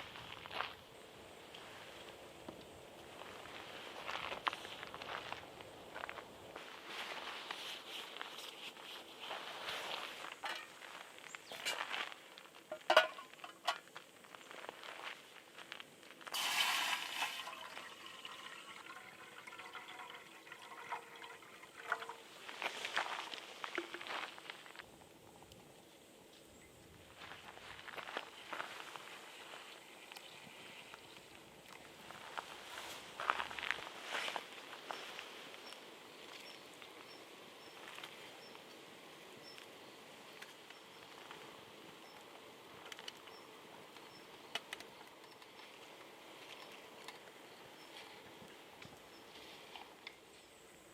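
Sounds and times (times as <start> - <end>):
water pouring into a pot: 16.3 - 22.7.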